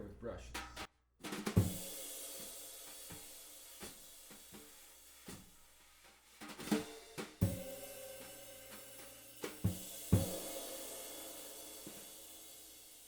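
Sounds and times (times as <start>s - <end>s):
cymbal struck with brushes: 1.5s - 5.4s, 6.6s - 13.0s
sizzling cymbal wash: 1.6s - 5.4s, 6.8s - 13.0s.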